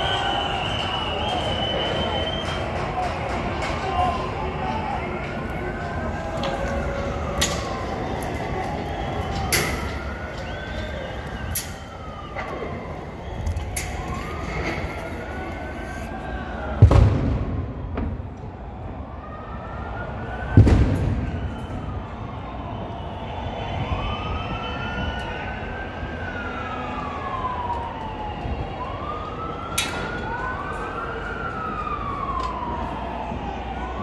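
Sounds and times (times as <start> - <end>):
emergency vehicle sirens wailing: 0.0 - 34.0
loud bang: 16.8 - 19.3, 20.5 - 22.2.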